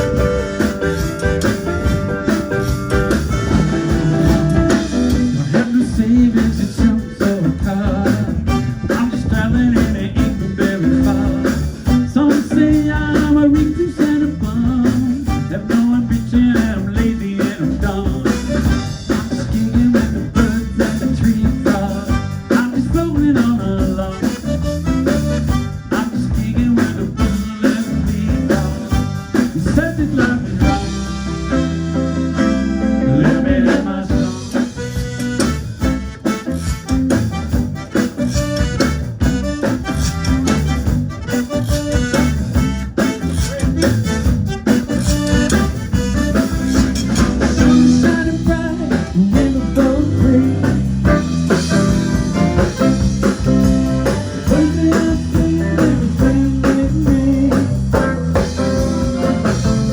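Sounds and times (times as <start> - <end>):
live blues band playing: 0.0 - 59.9
person singing: 4.7 - 24.6, 25.8 - 32.1, 32.8 - 35.0, 43.0 - 52.8, 54.0 - 59.9.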